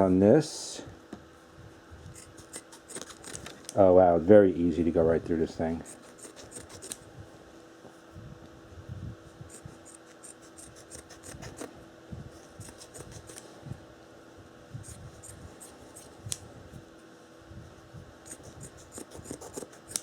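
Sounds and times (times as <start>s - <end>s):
shears cutting fabric: 2.1s - 3.5s, 5.7s - 7.1s, 9.4s - 13.5s, 14.8s - 16.5s, 18.2s - 20.0s.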